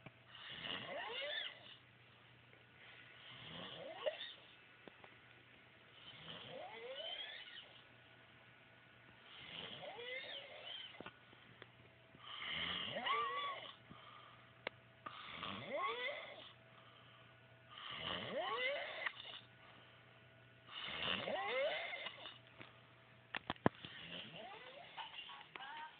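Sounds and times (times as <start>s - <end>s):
squealing pig-like snoring: 0.4s - 1.8s, 3.3s - 4.4s, 6.0s - 7.8s, 9.3s - 11.0s, 12.3s - 13.8s, 15.2s - 16.6s, 17.8s - 19.5s, 20.7s - 22.4s, 23.8s - 25.0s.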